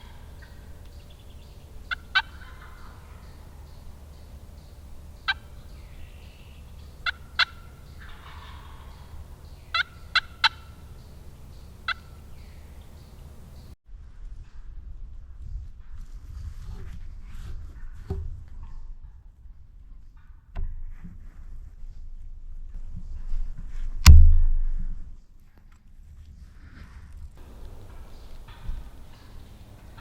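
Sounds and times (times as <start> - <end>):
turkeys gobbling: 0.0 - 13.6
turkeys clucking: 0.0 - 13.8.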